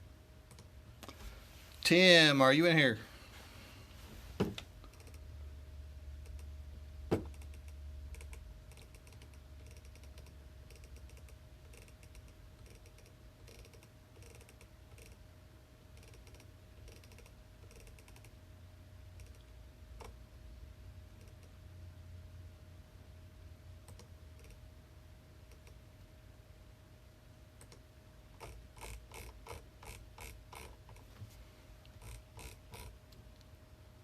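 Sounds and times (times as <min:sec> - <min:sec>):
faint steady hum: 0:00.0 - 0:34.0
keyboard typing clicks: 0:23.9 - 0:24.6.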